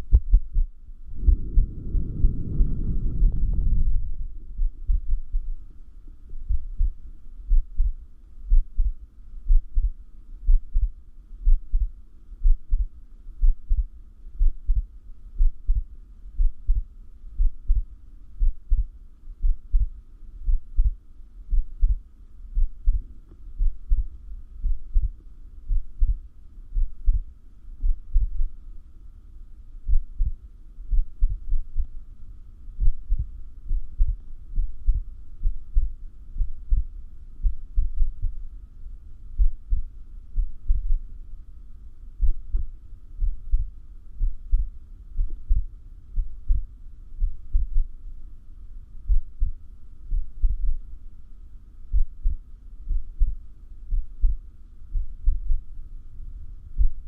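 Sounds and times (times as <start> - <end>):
heartbeat thumps: 0.0 - 5.7, 6.3 - 28.6, 29.9 - 32.0, 32.8 - 38.5, 39.4 - 41.1, 42.2 - 48.0, 49.1 - 50.8, 51.9 - 55.7, 56.8 - 57.0
faint steady hum: 0.0 - 57.0.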